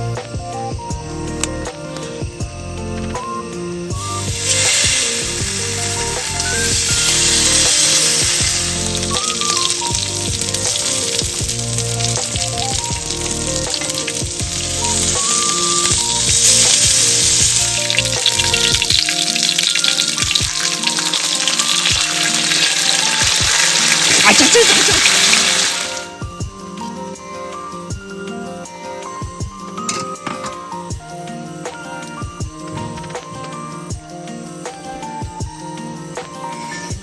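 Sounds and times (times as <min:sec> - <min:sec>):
background music: 0:00.0 - 0:37.0
food sizzling in a pan: 0:03.9 - 0:26.2.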